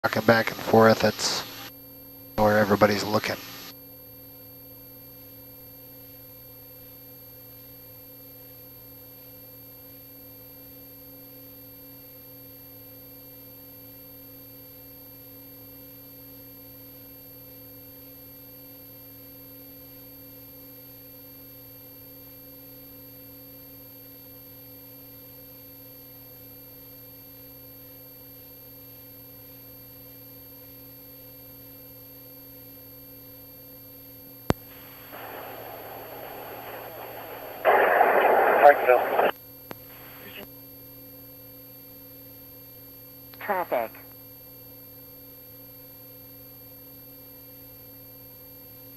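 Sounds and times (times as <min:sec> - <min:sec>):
faint high whine: 0:00.0 - 0:01.7, 0:02.4 - 0:03.7, 0:34.5 - 0:40.4.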